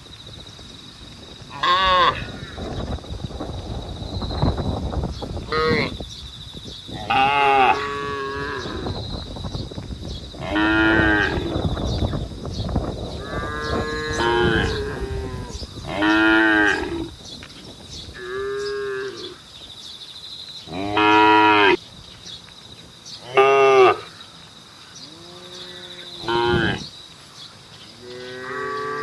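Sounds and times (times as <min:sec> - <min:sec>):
cattle mooing: 0:13.2 - 0:17.1, 0:25.1 - 0:26.8.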